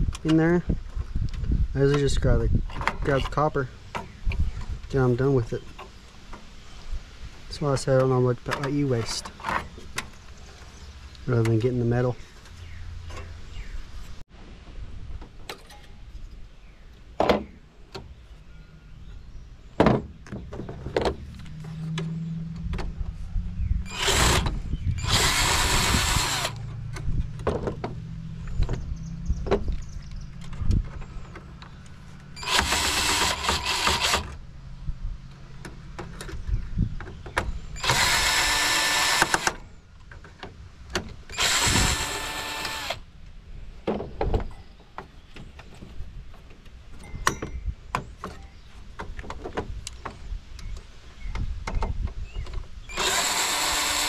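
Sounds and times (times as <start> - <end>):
power drill running: 23.9 - 26.6, 32.4 - 34.3, 37.8 - 39.6, 41.3 - 43.0, 52.9 - 54.0.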